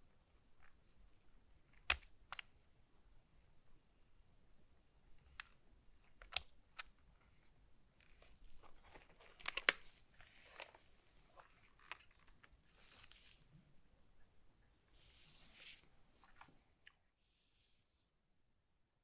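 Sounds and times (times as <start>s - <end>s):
packaging crinkling and rustling: 8.0s - 13.4s.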